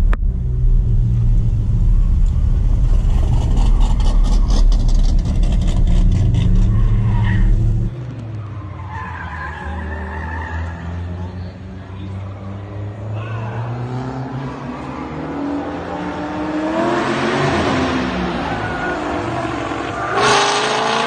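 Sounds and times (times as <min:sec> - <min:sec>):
car engine running hard: 0:00.0 - 0:08.4.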